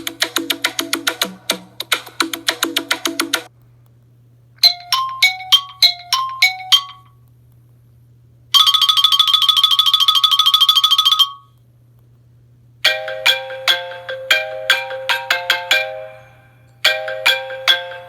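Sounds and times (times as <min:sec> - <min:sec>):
phone ringtone chime notes: 0:04.6 - 0:07.1, 0:08.6 - 0:11.5
rapid high trilling ring: 0:08.6 - 0:11.5.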